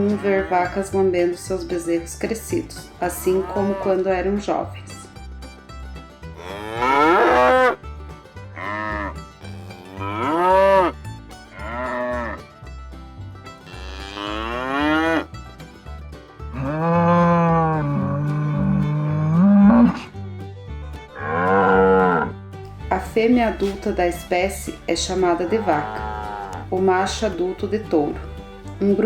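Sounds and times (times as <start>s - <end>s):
cattle mooing: 0.0s - 1.3s, 3.0s - 4.3s, 6.4s - 7.8s, 8.6s - 12.5s, 13.6s - 15.3s, 16.5s - 20.1s, 21.2s - 22.3s, 25.1s - 26.8s
background music with steady beat: 0.0s - 29.0s.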